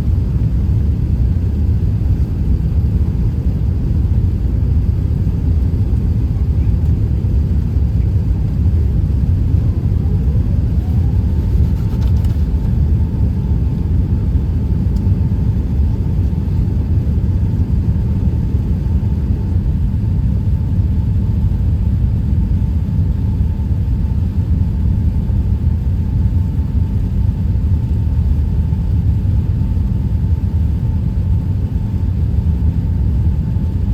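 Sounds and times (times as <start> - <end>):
engine whine: 0.0 - 21.5
jet engines low rumble: 0.0 - 33.9.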